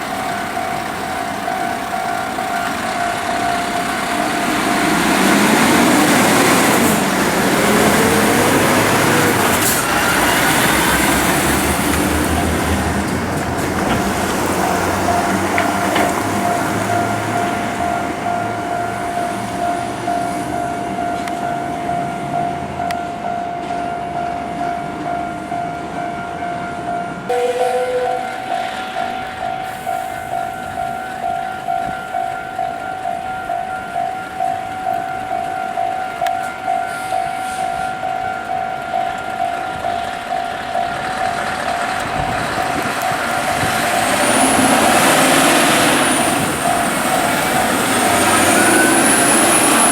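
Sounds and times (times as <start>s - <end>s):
truck engine rumbling: 0.0s - 21.4s, 37.6s - 49.9s
level crossing alarm ringing: 0.0s - 49.9s.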